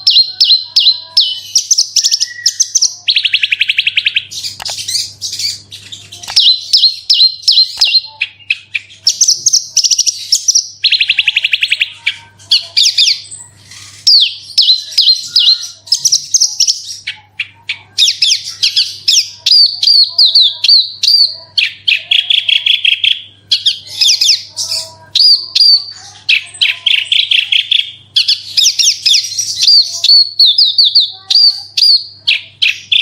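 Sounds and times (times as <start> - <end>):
lark singing: 0.0 - 33.0.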